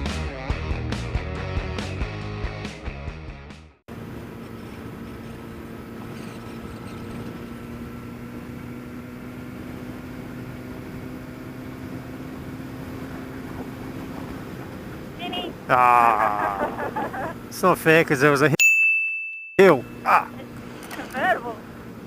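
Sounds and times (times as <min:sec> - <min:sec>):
motorcycle engine steady: 0:03.9 - 0:18.0
wind and road noise: 0:03.9 - 0:18.6, 0:19.7 - 0:22.0.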